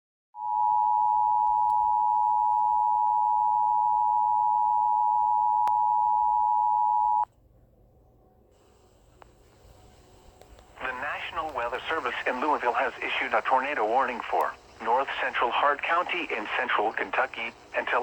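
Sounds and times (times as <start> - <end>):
faint hiss: 8.5 - 18.0
click: 10.4 - 10.7.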